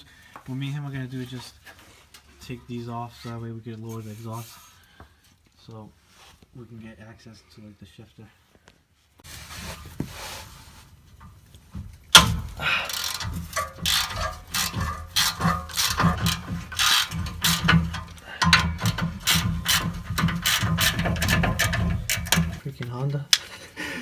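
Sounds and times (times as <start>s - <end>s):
ratchet wrench clicking: 12.1s - 22.6s.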